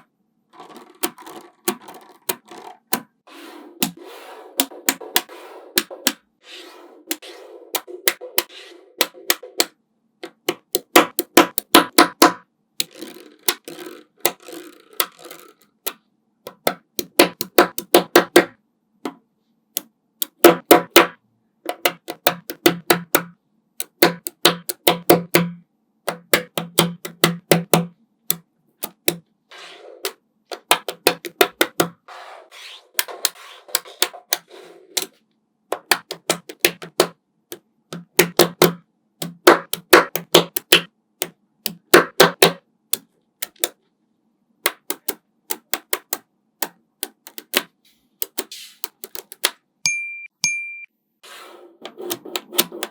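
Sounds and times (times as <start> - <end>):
magnetic balls clacking together: 0.5 - 3.2, 7.8 - 18.6, 20.2 - 29.2, 30.0 - 32.0, 33.0 - 43.8, 44.7 - 49.5, 52.0 - 52.9.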